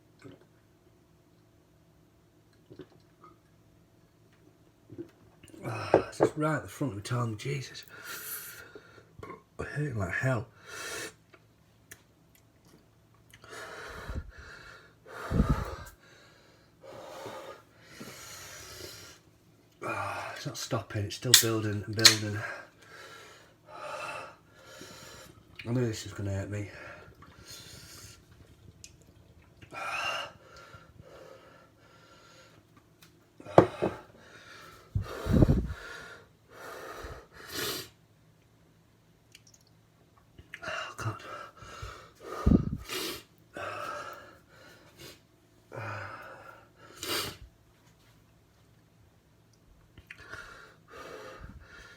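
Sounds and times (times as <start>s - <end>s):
man breathing heavily: 13.4s - 19.1s, 33.4s - 37.3s, 41.2s - 42.9s, 50.2s - 51.9s.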